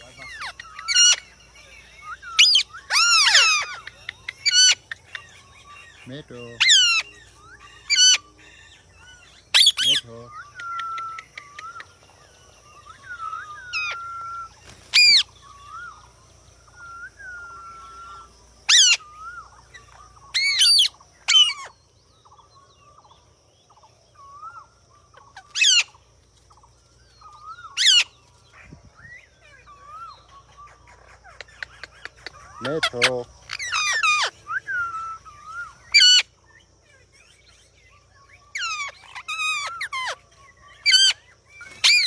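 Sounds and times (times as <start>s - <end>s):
parrots screeching: 0.0s - 1.3s, 2.0s - 4.9s, 6.6s - 8.3s, 9.1s - 10.1s, 12.8s - 16.0s, 17.3s - 21.8s, 25.2s - 25.9s, 27.4s - 28.6s, 29.8s - 36.3s, 38.4s - 42.0s
whistled notes and chirps: 0.0s - 23.2s, 26.6s - 42.0s.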